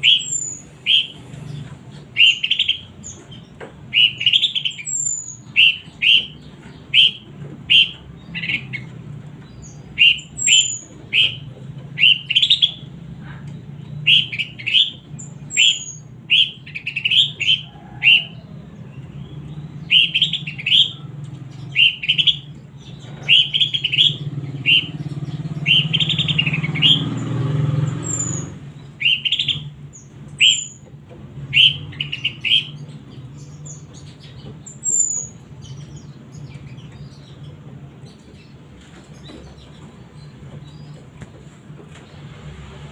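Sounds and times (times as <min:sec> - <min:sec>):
bird calling in sharp notes: 0:00.0 - 0:01.2, 0:02.0 - 0:03.3, 0:03.9 - 0:08.9, 0:09.8 - 0:12.9, 0:13.9 - 0:18.4, 0:19.8 - 0:27.3, 0:28.0 - 0:30.8, 0:31.4 - 0:33.1.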